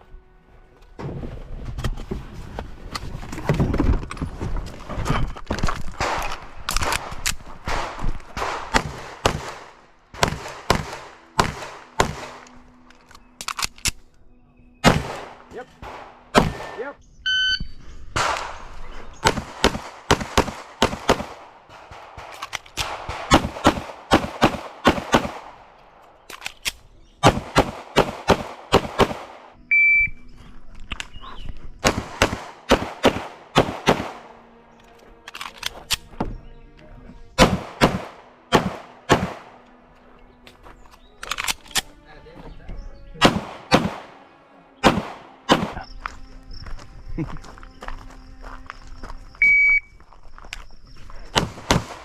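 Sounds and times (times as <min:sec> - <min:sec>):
pistol shots: 0:06.0 - 0:12.5, 0:14.8 - 0:16.8, 0:18.2 - 0:25.7, 0:27.2 - 0:29.6, 0:31.8 - 0:34.3, 0:37.4 - 0:39.6, 0:43.2 - 0:44.2, 0:44.8 - 0:45.9, 0:51.3 - 0:52.0
shot timer beep: 0:29.7 - 0:30.2, 0:49.4 - 0:49.9.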